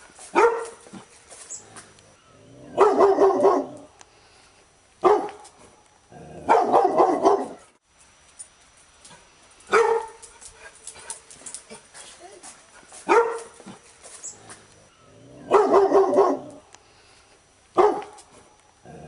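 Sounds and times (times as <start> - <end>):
dog barking: 0.3 - 0.8, 2.7 - 3.9, 5.0 - 5.4, 6.4 - 7.7, 9.7 - 10.2, 13.0 - 13.8, 15.5 - 16.6, 17.8 - 18.2.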